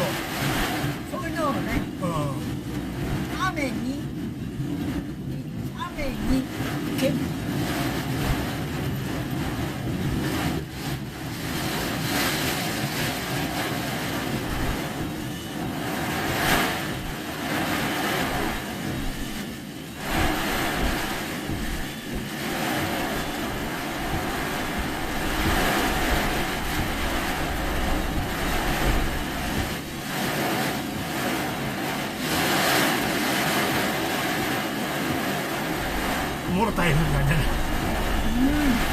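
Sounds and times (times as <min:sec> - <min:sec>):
car engine and road noise: 0:00.0 - 0:38.9
hissing wash: 0:09.5 - 0:38.9.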